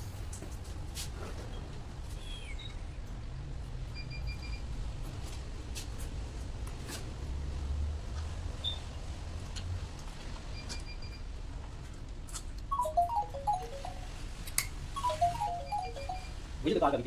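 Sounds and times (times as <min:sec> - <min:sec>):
high electronic beeps: 0:12.7 - 0:14.1, 0:15.0 - 0:16.3.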